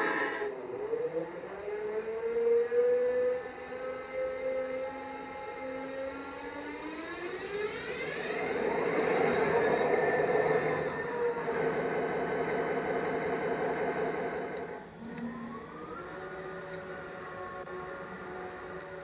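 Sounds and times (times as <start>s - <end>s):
faint high whine: 0.0s - 1.5s.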